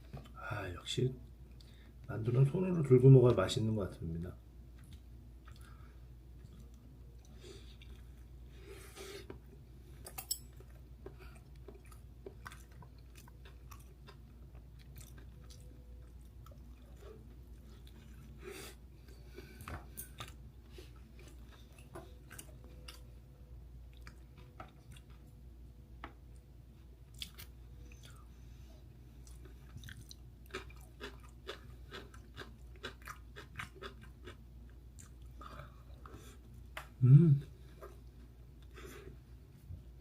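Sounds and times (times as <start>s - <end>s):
steady low hum: 0.0s - 40.0s
person chewing food: 4.7s - 23.2s, 23.8s - 25.4s, 27.1s - 28.3s, 29.1s - 39.2s.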